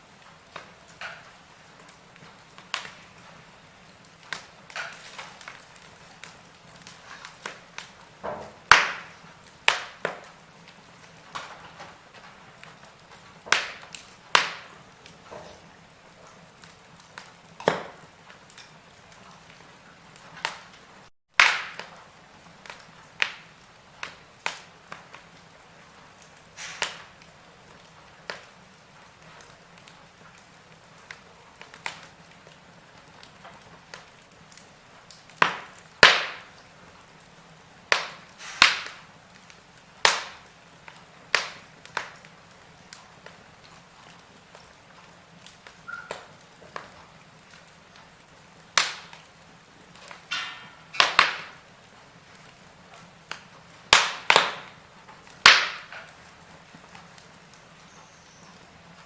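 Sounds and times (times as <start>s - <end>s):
wood fire crackling: 0.0s - 59.0s
loud pop: 8.2s - 9.9s, 21.4s - 21.9s, 35.4s - 36.5s, 38.0s - 39.0s, 55.4s - 55.9s.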